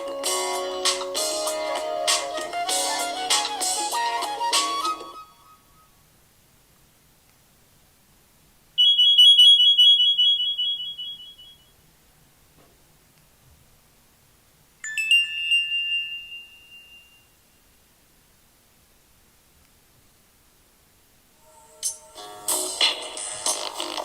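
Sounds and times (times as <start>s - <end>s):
phone alert ringing tones: 8.8s - 11.6s
quick electronic chirp: 8.8s - 11.7s.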